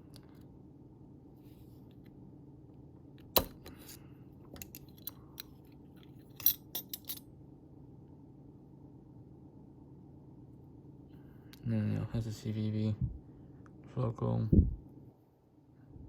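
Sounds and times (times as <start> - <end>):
knife parts clicking and clinking: 6.3 - 7.2.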